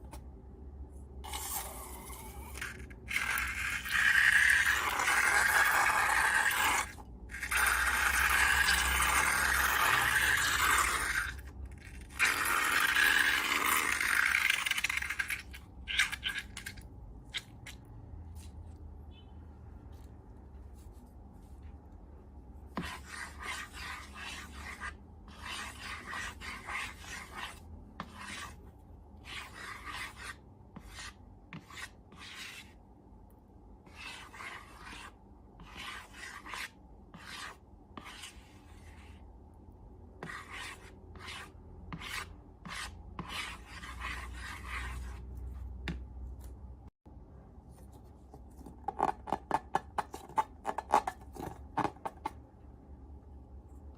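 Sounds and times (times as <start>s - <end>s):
scratchy rubbing strokes: 22.7s - 32.8s, 33.9s - 39.2s, 40.2s - 45.5s.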